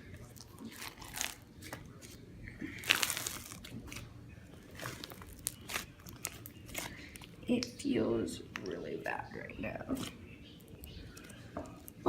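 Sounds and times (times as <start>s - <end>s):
slime crackling and tearing: 0.5s - 1.4s, 2.8s - 4.0s, 4.7s - 7.3s.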